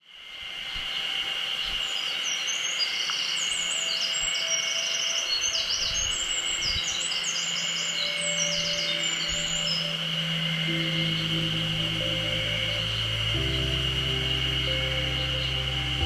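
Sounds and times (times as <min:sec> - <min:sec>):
high-pitched whine: 0:00.0 - 0:16.0
wren singing trills: 0:03.3 - 0:16.0.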